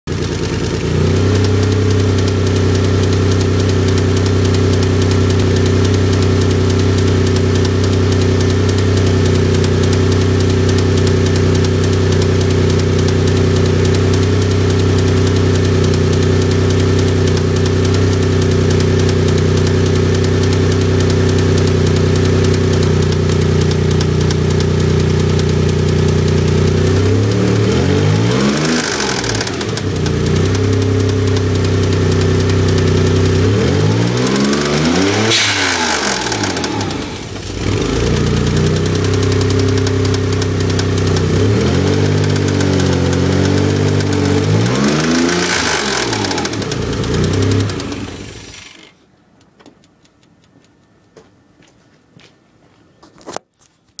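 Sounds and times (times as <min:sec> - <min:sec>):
engine revving: 0:00.1 - 0:49.0.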